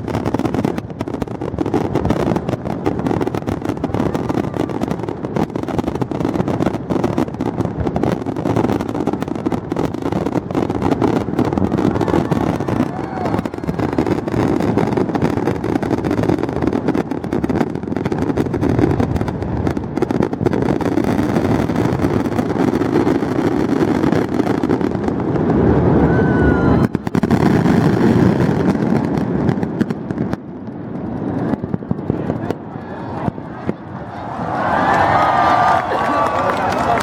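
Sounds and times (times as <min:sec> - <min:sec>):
fireworks crackling and rumbling: 0:00.0 - 0:37.0
rising firework whistle: 0:07.9 - 0:16.7, 0:20.9 - 0:28.7, 0:33.0 - 0:37.0.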